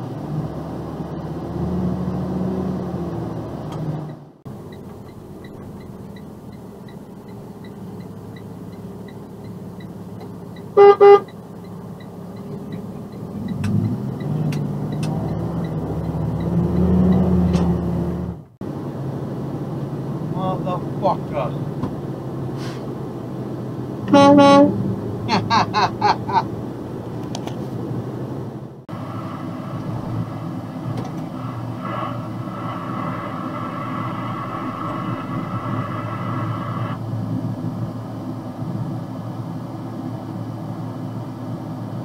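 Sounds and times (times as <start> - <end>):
truck engine running: 4.1 - 42.0
truck air horn blasts: 10.8 - 11.3, 24.1 - 24.8.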